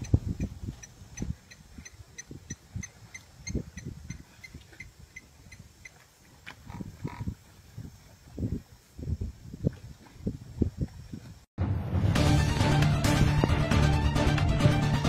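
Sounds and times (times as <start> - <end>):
animal grunts and feeding noises: 6.4 - 7.4.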